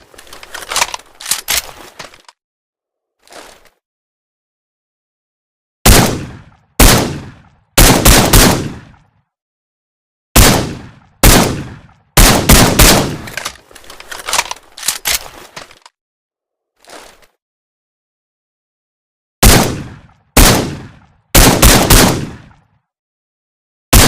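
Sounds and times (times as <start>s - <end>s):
suppressed rifle shots: 5.9s - 9.0s, 10.4s - 13.6s, 19.4s - 22.6s.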